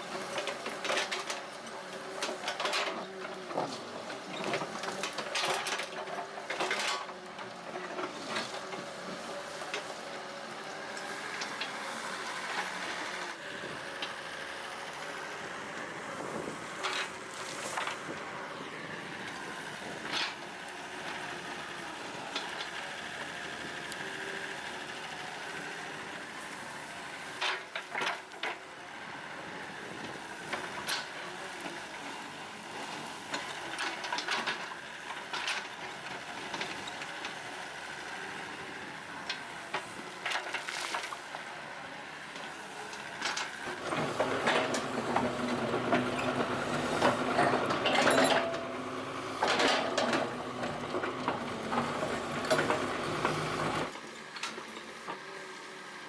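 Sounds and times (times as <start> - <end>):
excavator engine running: 0.0 - 56.0
digging knocks and clanks: 43.2 - 54.6.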